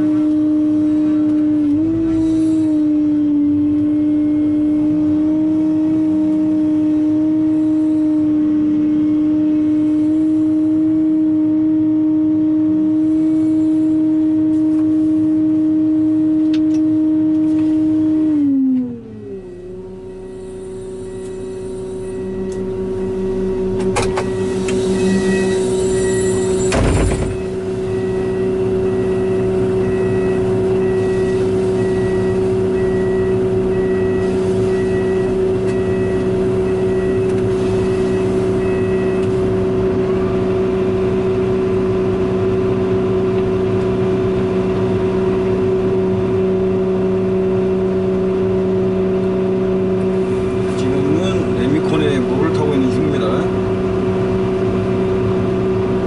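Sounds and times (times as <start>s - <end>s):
diesel engine running: 0.0s - 56.0s
high repeated beeping: 19.9s - 37.3s
loud knock: 26.7s - 27.5s.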